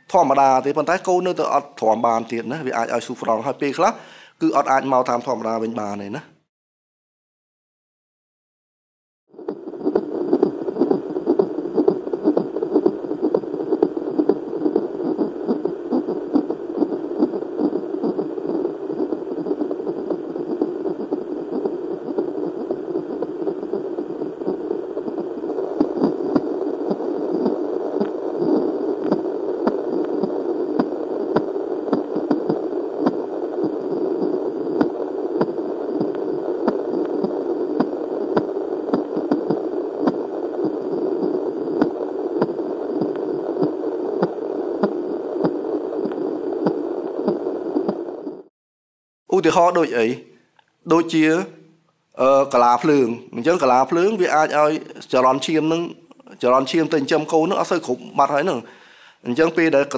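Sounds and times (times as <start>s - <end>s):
fetal heartbeat whooshing: 9.3s - 48.5s.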